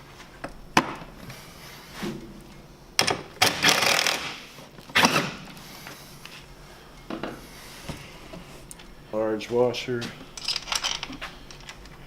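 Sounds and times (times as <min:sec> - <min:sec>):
metal bolts clattering: 0:10.4 - 0:11.9.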